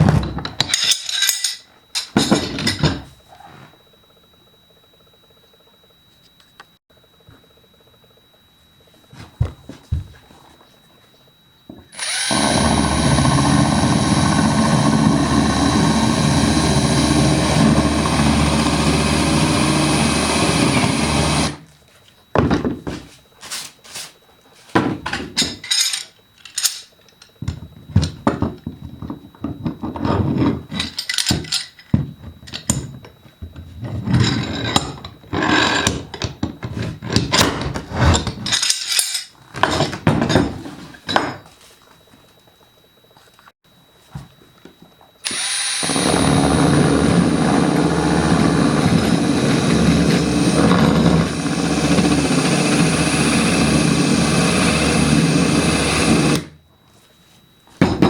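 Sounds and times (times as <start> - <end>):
electric drill cutting wood: 11.9 - 21.6, 45.2 - 56.5.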